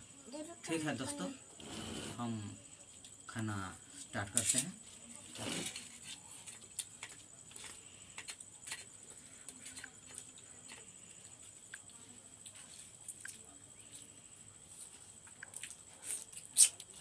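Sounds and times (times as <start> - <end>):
people eating by hand: 0.1 - 17.0
chewing: 6.3 - 17.0.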